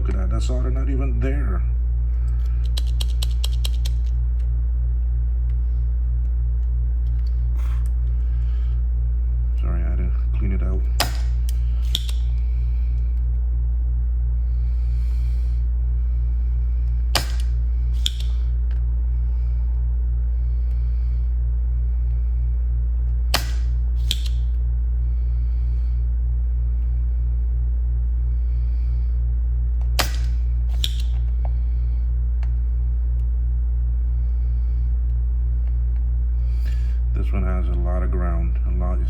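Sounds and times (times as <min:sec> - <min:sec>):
low electrical hum: 0:00.0 - 0:39.0
desoldering pump snapping: 0:02.2 - 0:04.5, 0:10.9 - 0:13.3, 0:17.0 - 0:18.8, 0:23.1 - 0:24.6, 0:29.8 - 0:31.6
desoldering pump click: 0:11.0 - 0:12.4, 0:17.2 - 0:18.4, 0:23.3 - 0:24.5, 0:29.8 - 0:31.3.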